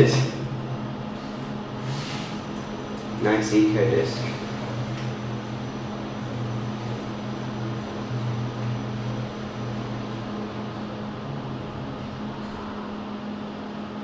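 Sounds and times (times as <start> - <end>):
lift car humming: 0.0 - 14.0
low drone: 0.0 - 14.0.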